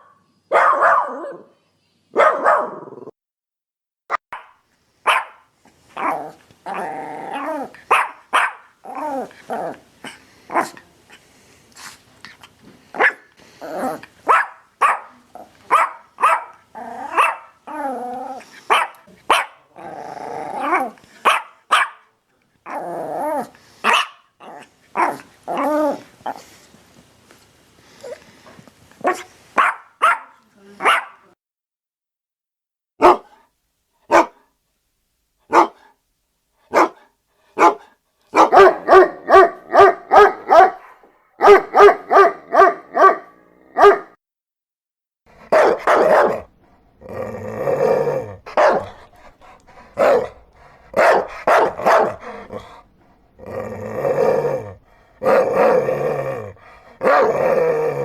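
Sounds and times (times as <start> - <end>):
dogs barking: 0.0 - 1.5, 2.2 - 2.9, 4.3 - 5.4, 7.9 - 8.7, 13.0 - 13.3, 14.2 - 17.6, 18.7 - 19.7, 20.6 - 22.1, 23.8 - 24.2, 29.0 - 31.2, 33.0 - 33.3, 34.1 - 34.4, 35.5 - 35.8, 36.7 - 37.0, 37.6 - 44.1, 45.5 - 46.5, 48.5 - 49.1, 50.0 - 52.7.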